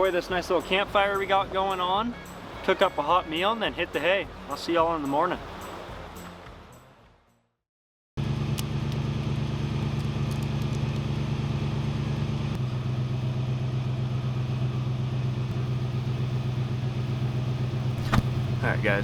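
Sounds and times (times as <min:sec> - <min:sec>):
truck engine idling: 0:08.2 - 0:19.0.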